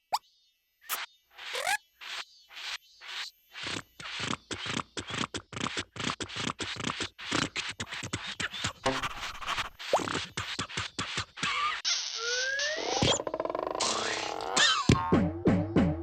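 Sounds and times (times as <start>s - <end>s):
cartoon scratching: 0.9s - 13.1s
rising squeak: 1.5s - 1.8s.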